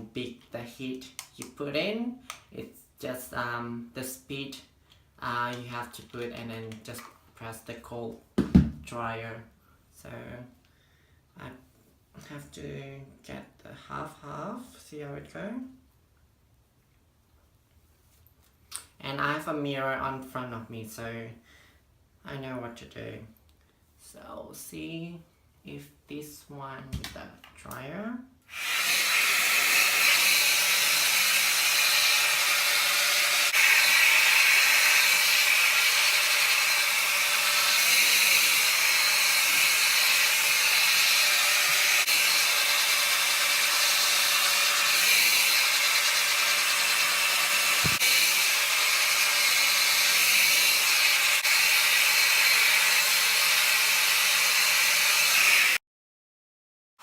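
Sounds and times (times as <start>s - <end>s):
hair dryer blowing: 28.5s - 55.8s.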